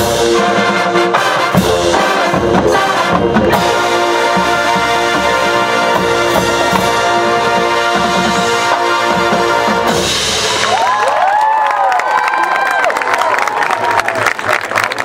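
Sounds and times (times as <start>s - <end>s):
brass sustained chords: 0.0s - 10.7s
percussion hits: 0.0s - 11.0s
marching band playing: 0.0s - 11.2s.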